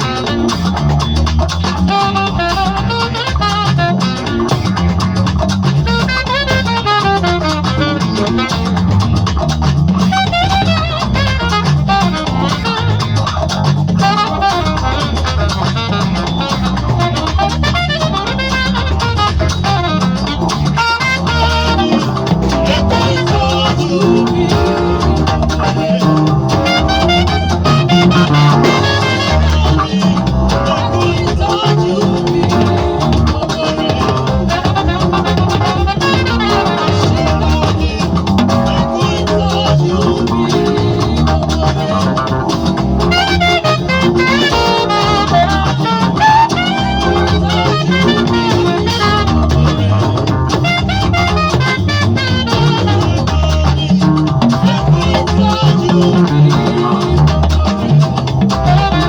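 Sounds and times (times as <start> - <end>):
loud music with bass and guitar: 0.0 - 59.0
horns playing a melody: 1.9 - 4.7, 5.8 - 9.1, 10.1 - 13.2, 14.0 - 33.4, 34.1 - 41.2, 42.1 - 53.6, 58.5 - 59.0.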